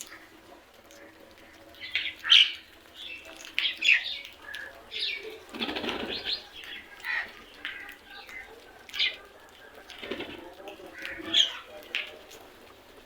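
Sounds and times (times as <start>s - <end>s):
bird wingbeats: 5.4s - 8.4s, 9.8s - 13.0s
crows cawing: 6.7s - 9.2s, 10.9s - 11.7s.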